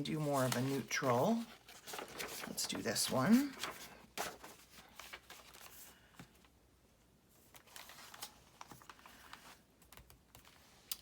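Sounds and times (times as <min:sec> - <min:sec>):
paper rustling and tapping: 0:00.3 - 0:06.3.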